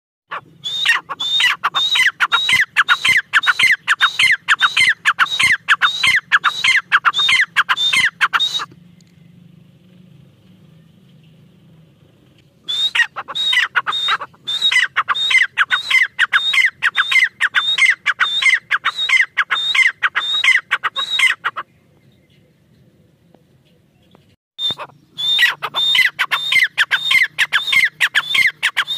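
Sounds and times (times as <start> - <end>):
partridge calling: 0.3 - 8.8, 12.7 - 22.6, 23.6 - 28.9.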